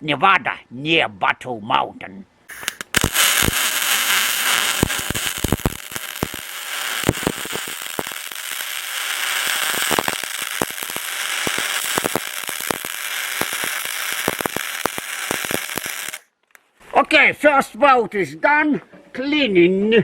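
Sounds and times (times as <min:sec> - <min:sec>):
welding arc crackling hiss: 0:02.5 - 0:16.3.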